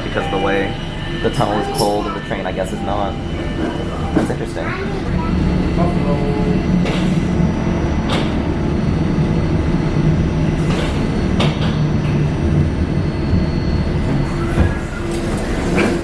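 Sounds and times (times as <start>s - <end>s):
train wheels rumbling in tunnel: 0.0s - 16.0s
sharp clacks of rail car: 8.0s - 8.4s, 10.6s - 12.2s, 14.1s - 16.0s.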